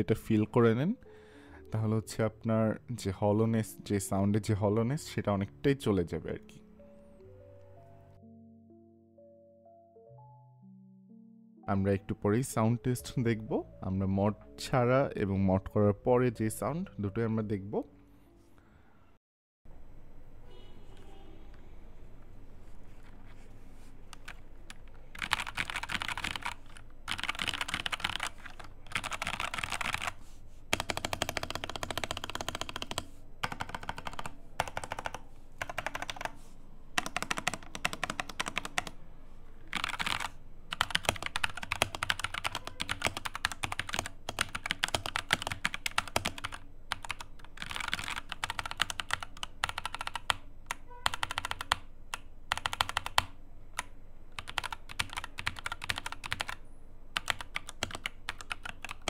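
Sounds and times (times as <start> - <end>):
mechanical keyboard keys clacking: 24.1 - 36.3, 37.0 - 38.9, 39.7 - 56.6, 57.2 - 59.0.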